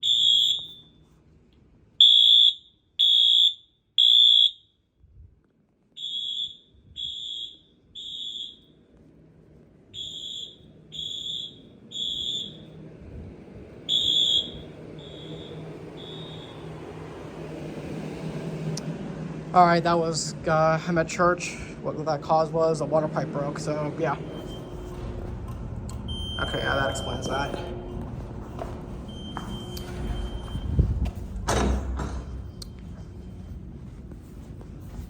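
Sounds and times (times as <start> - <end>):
fire alarm high-pitched beeps: 0.0 - 1.0, 2.0 - 4.9, 6.0 - 8.8, 10.0 - 12.8, 13.9 - 16.8, 24.2 - 25.0, 26.0 - 28.0, 29.1 - 30.9
low steady hum: 4.9 - 35.0.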